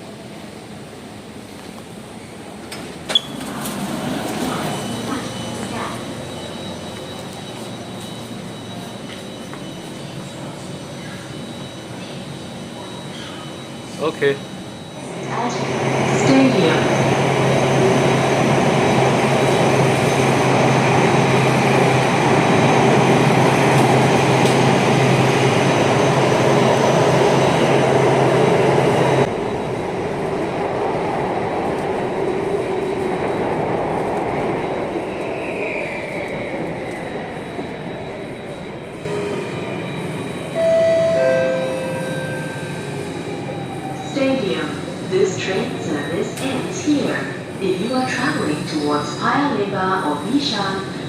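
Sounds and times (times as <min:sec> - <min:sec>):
falling whine of train slowing: 0:00.0 - 0:51.0
train running on rails: 0:00.0 - 0:51.0
two-note chime: 0:40.6 - 0:42.8.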